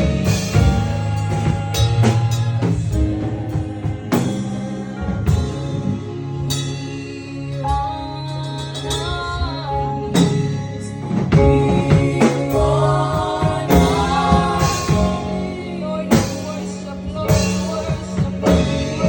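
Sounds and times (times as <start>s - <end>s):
bass: 0.0s - 19.0s
gospel singing: 0.0s - 19.0s
drum hits: 11.2s - 19.0s.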